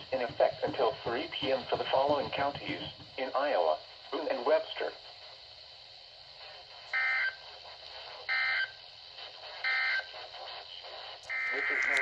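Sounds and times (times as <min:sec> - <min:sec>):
digital data tone bursts: 0:09.6 - 0:10.1, 0:11.2 - 0:12.0
faint receiver hiss: 0:11.1 - 0:12.0.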